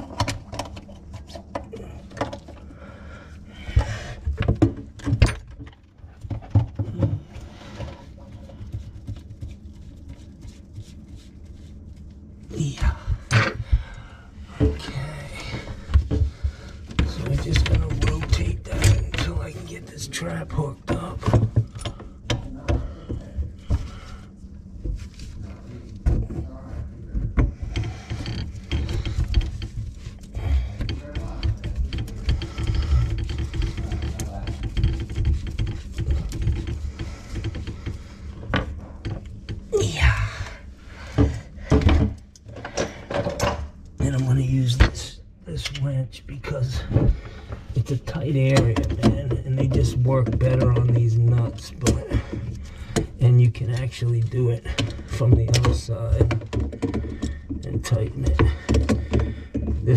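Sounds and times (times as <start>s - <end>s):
knocks and clunks: 12.6s - 24.1s, 26.0s - 59.9s.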